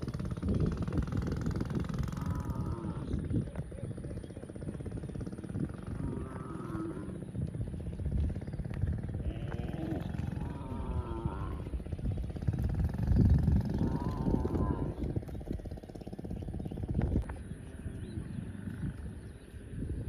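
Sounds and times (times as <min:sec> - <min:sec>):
steady low rumble: 0:00.0 - 0:20.0
cow mooing: 0:02.1 - 0:03.2, 0:05.9 - 0:07.2, 0:09.2 - 0:11.8, 0:13.8 - 0:15.0.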